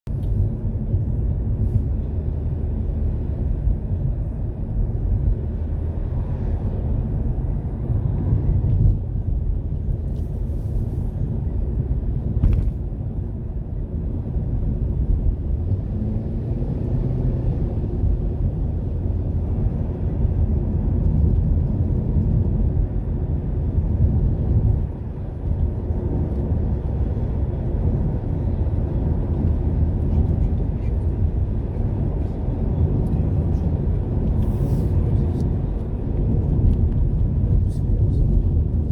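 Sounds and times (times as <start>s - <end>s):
car driving rumble inside cabin: 0.0s - 38.9s.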